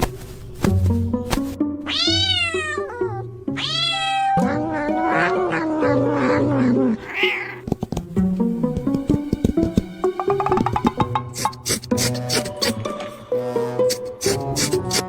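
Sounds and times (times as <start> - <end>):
cat meowing: 1.9 - 7.7
background music with a beat: 8.1 - 12.9.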